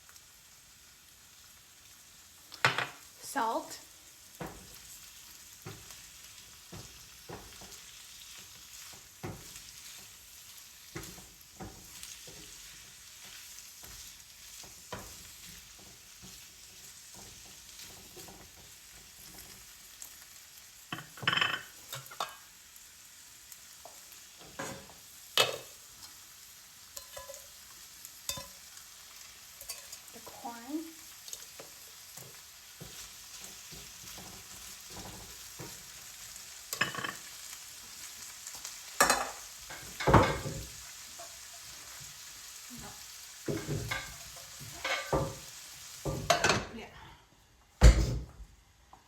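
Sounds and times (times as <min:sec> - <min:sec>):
beans sizzling in oil: 0:00.0 - 0:47.8
utensil stirring and tapping pan: 0:04.3 - 0:20.2, 0:20.8 - 0:22.5, 0:23.8 - 0:26.2, 0:26.9 - 0:28.7, 0:29.4 - 0:46.7.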